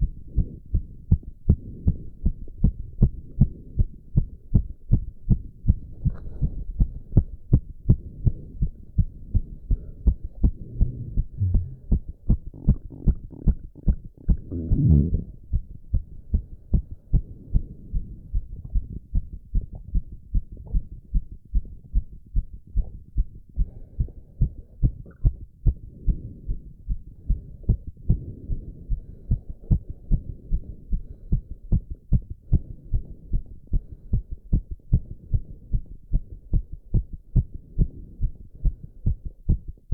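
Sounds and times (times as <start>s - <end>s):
heart beating fast: 0.0s - 39.9s
low rushing: 10.8s - 12.1s.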